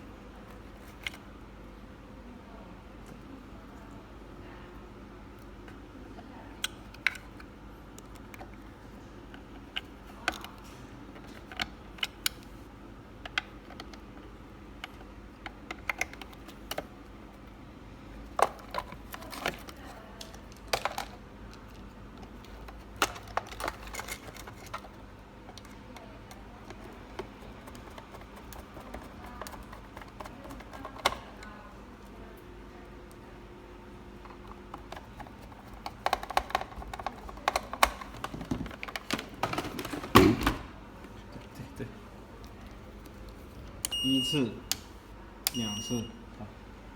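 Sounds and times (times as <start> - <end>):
faint steady hum: 0.0 - 46.9
hard plastic parts clicking: 18.3 - 31.3, 34.2 - 40.7.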